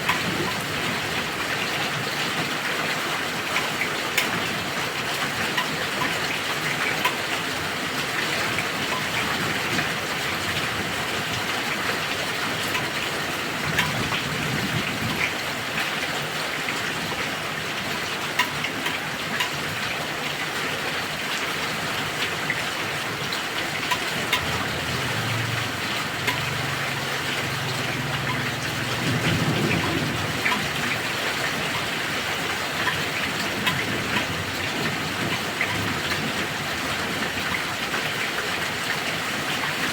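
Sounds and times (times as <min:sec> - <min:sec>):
heavy rain falling: 0:00.0 - 0:39.9
thunder rumbling: 0:24.4 - 0:32.2.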